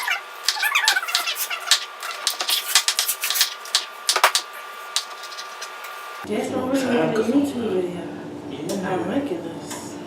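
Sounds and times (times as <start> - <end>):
rapid kitchen tapping: 0.0 - 5.9.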